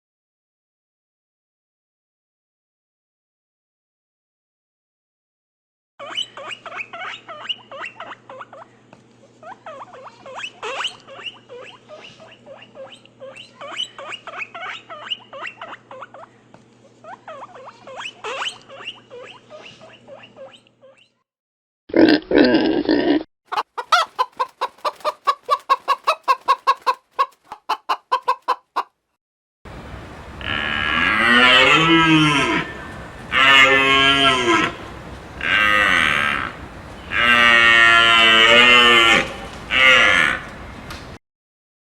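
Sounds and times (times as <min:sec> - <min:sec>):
chickens clucking: 0:23.5 - 0:28.9, 0:30.0 - 0:41.1
rapid pulsing call: 0:30.0 - 0:40.5
cattle mooing: 0:30.3 - 0:40.6.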